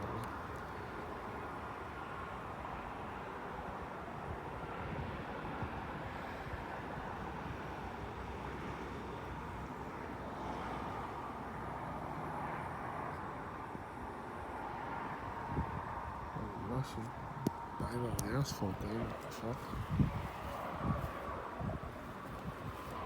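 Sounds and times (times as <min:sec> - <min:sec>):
distant traffic rumble: 0:00.0 - 0:23.0.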